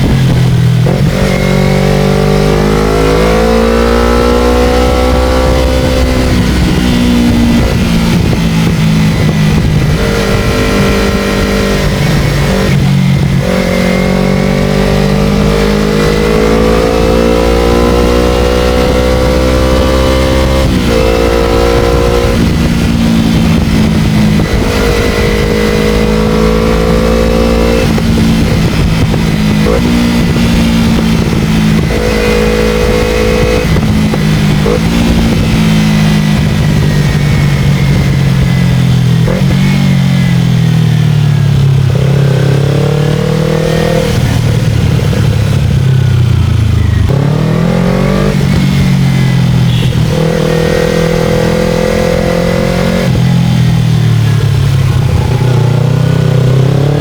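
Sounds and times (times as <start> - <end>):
motorcycle engine shifting gears: 0.0 - 57.0.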